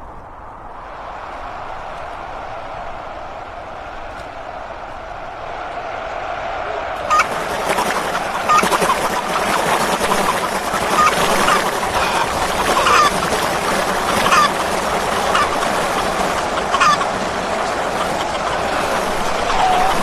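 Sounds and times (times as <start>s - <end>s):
chickens clucking and squawking: 7.0s - 20.0s.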